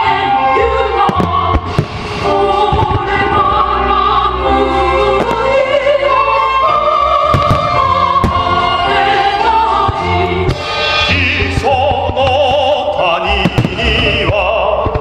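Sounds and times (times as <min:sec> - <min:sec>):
choir with orchestra: 0:00.0 - 0:15.0
firework bangs: 0:01.0 - 0:03.6, 0:07.3 - 0:15.0.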